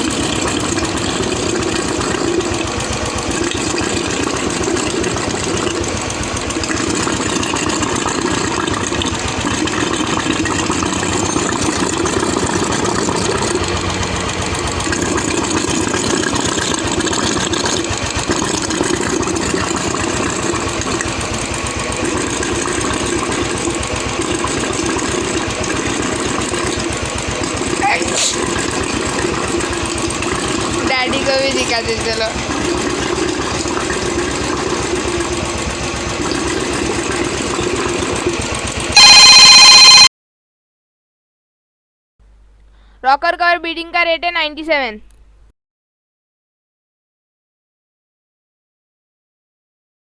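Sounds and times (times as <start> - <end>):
motorcycle engine idling: 0.0 - 39.3.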